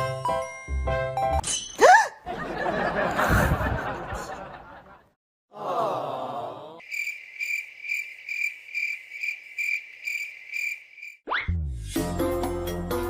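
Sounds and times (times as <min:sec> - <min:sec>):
cricket chirping: 0:06.8 - 0:11.2.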